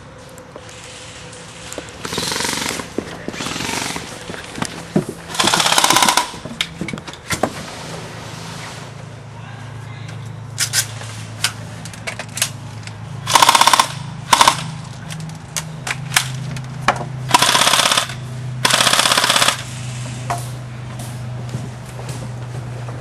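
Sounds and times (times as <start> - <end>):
airsoft full-auto bursts: 2.0 - 4.1, 5.3 - 6.4, 13.2 - 14.7, 17.3 - 19.7
airsoft rifle shots: 5.3 - 6.4, 13.3 - 14.8, 17.3 - 19.7.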